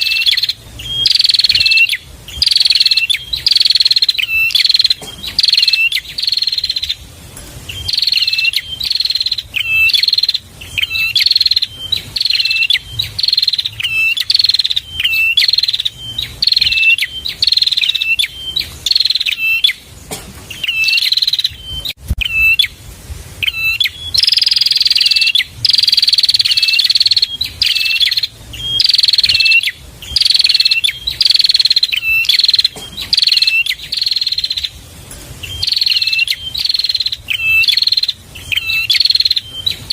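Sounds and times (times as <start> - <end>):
sharp clicking bird notes: 1.1 - 21.6, 28.8 - 39.8.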